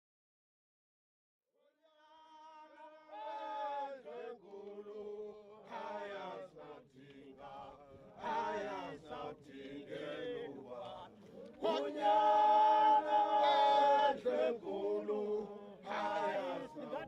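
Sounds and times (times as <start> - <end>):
group chanting unaccompanied: 1.8 - 17.0.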